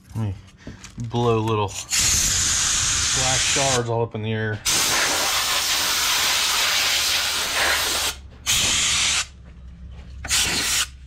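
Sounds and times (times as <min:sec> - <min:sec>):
compressed air hissing: 0:01.9 - 0:03.8, 0:04.7 - 0:09.3, 0:10.2 - 0:11.0.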